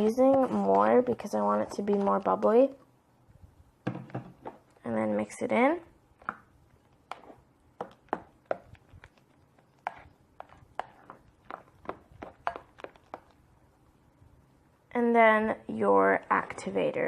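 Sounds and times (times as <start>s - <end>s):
mixing tool tapping against bowl: 7.1s - 8.8s, 9.8s - 13.3s.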